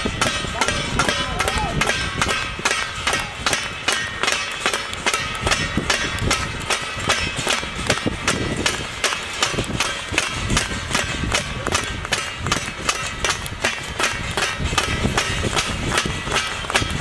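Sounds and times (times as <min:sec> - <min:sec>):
banging on metal plates: 0:00.0 - 0:17.0
clapping: 0:08.7 - 0:17.0.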